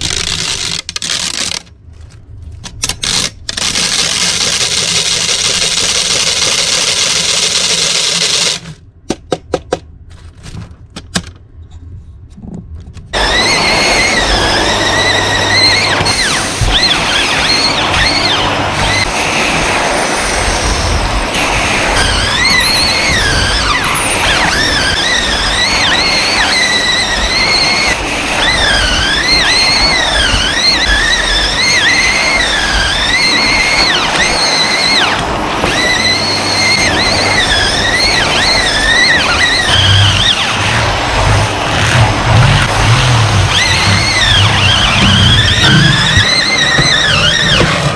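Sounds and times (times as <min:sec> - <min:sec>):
vacuum cleaner running: 0:13.2 - 0:47.9.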